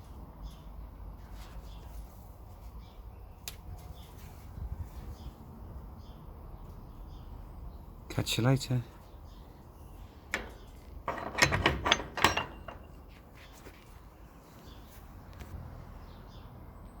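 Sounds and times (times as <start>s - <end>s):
door knocking and rattling: 10.4s - 13.0s.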